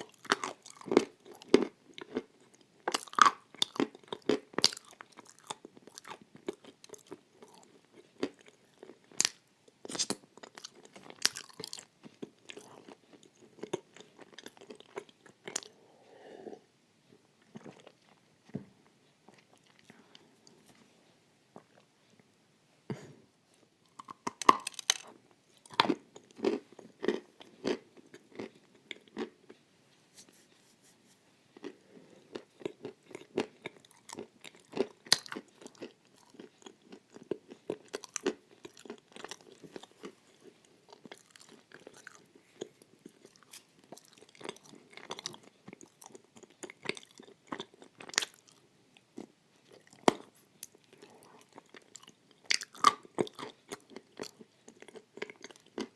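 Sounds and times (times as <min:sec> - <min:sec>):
wet chewing with crunches: 0:00.0 - 0:15.8, 0:31.6 - 0:48.6, 0:49.2 - 0:55.9.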